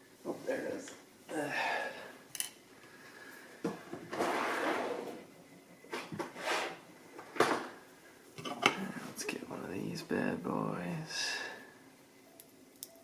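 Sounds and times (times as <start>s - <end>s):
rustle and scrape: 4.1s - 5.2s, 5.9s - 6.8s.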